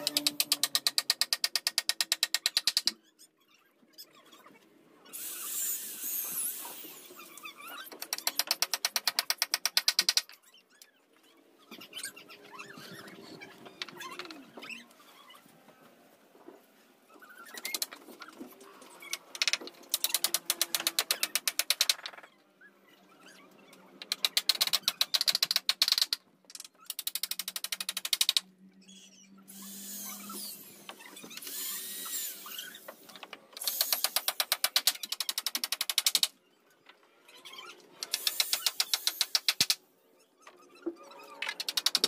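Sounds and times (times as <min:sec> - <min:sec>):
power drill rattling: 0:33.6 - 0:34.4.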